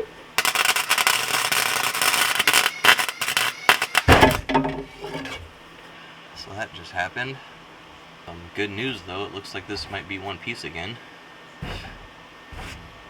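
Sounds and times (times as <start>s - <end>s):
welding arc crackling: 0.0s - 4.4s.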